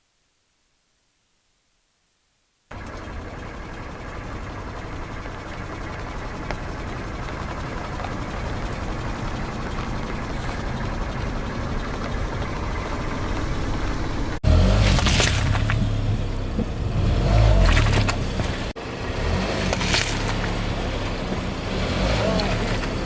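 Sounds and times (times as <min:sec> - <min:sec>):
car engine and tyres rumbling: 0:02.7 - 0:23.0
sharp crack: 0:14.4 - 0:18.8.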